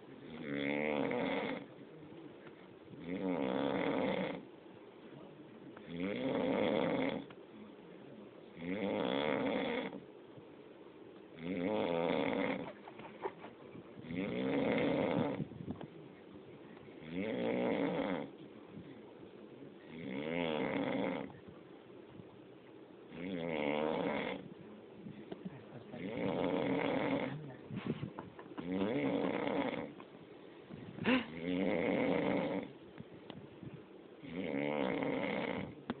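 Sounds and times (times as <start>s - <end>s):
man snoring: 0.2s - 1.7s, 3.0s - 4.4s, 5.9s - 7.3s, 8.6s - 10.0s, 11.4s - 12.6s, 14.0s - 15.5s, 17.0s - 18.3s, 19.9s - 21.4s, 23.2s - 24.5s, 26.0s - 27.4s, 28.6s - 30.0s, 31.1s - 32.7s, 34.2s - 35.8s.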